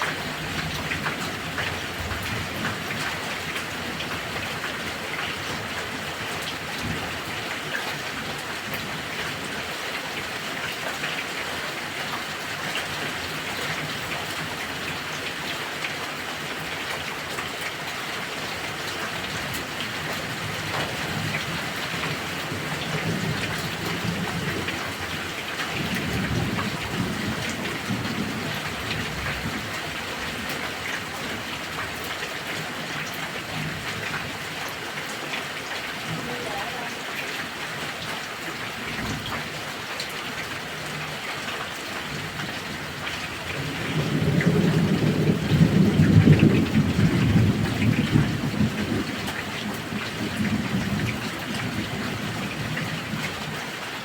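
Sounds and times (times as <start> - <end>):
heavy rain falling: 0.0 - 54.0
thunder rumbling: 43.5 - 53.2.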